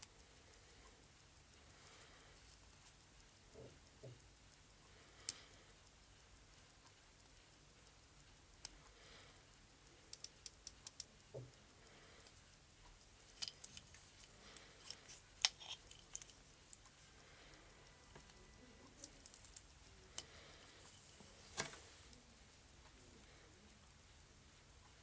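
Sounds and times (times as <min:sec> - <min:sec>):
light clicks and taps handling watch: 0:00.0 - 0:25.0.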